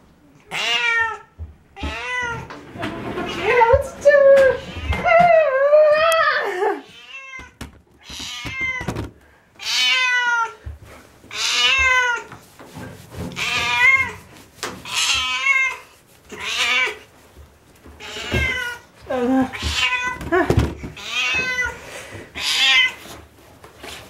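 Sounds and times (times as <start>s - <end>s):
cat meowing: 0.5s - 2.5s, 6.9s - 8.9s, 9.6s - 10.6s, 11.3s - 12.3s, 14.8s - 17.0s, 19.5s - 20.2s, 21.0s - 21.8s, 22.4s - 23.0s.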